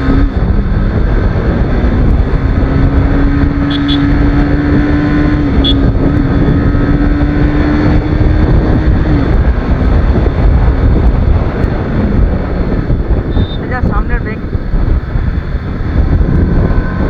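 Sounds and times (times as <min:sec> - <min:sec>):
motorcycle engine running: 0:00.0 - 0:17.0
wind and road noise: 0:00.0 - 0:17.0.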